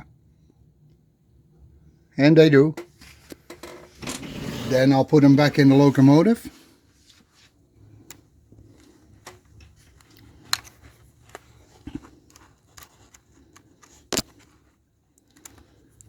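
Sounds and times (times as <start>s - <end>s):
light clicks of small parts: 8.0s - 16.0s.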